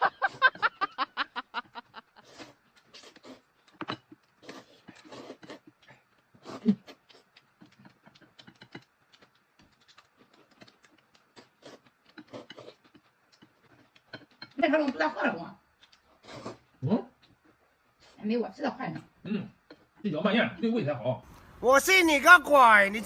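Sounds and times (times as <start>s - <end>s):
chewing and smacking: 2.1s - 18.2s.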